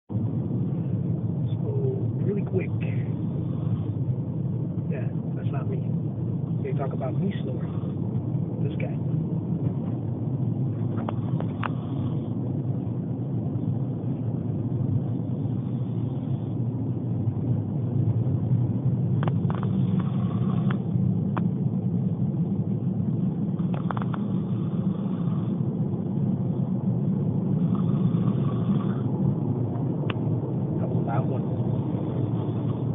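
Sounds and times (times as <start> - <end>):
person snoring: 6.8 - 8.0, 19.6 - 20.8, 27.6 - 29.1.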